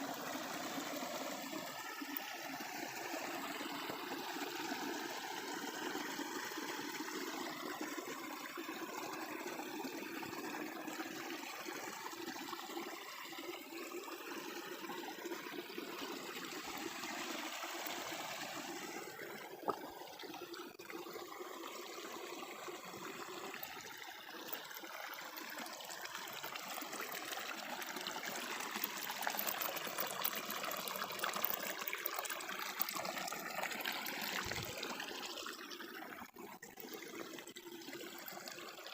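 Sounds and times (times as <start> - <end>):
stream babbling over stones: 0.0 - 38.9.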